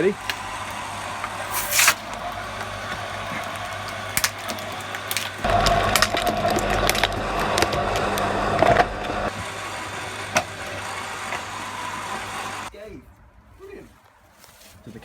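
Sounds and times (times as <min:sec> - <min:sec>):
shredder motor running: 0:00.0 - 0:12.7
can crunching and cracking: 0:00.2 - 0:08.3.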